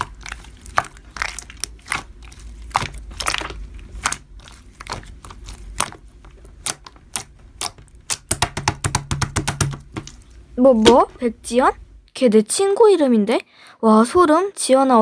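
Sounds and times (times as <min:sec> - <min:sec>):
slime squishing with crisp pops: 0:00.0 - 0:11.1.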